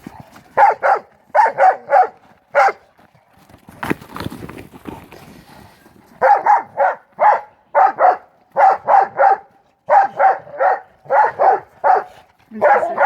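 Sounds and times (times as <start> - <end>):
dog barking high-pitched: 0.6 - 2.8, 6.2 - 13.0.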